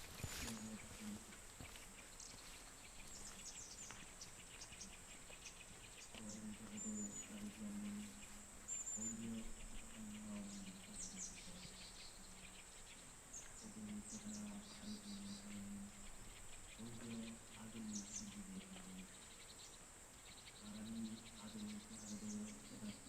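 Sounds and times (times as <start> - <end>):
distant chanting voice: 0.0 - 2.2, 6.1 - 19.3, 20.6 - 23.0
small birds chirping: 0.0 - 23.0.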